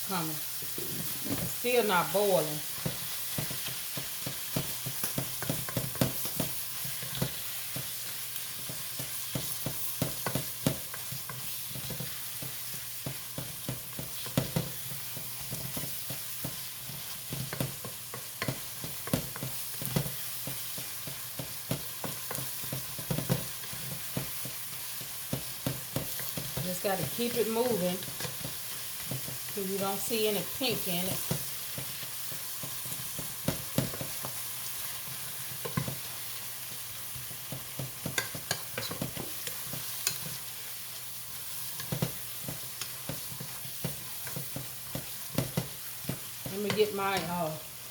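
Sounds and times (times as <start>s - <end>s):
meat sizzling in a skillet: 0.0s - 47.9s
utensil tapping a pan: 37.2s - 40.3s.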